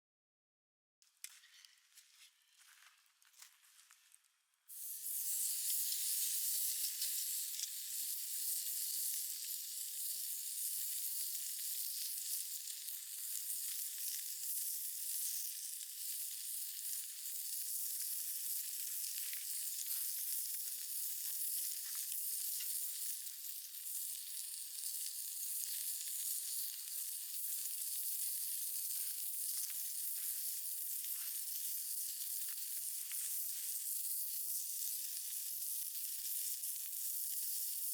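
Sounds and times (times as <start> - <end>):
meat sizzling on grill pan: 4.7 - 37.9
small crackles: 15.2 - 37.9.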